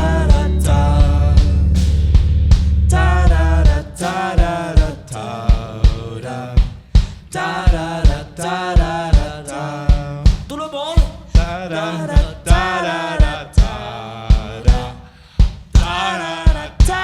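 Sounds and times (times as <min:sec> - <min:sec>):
person singing lead vocal: 0:00.0 - 0:02.0, 0:02.9 - 0:15.2, 0:15.8 - 0:17.0
rock band playing: 0:00.0 - 0:03.2.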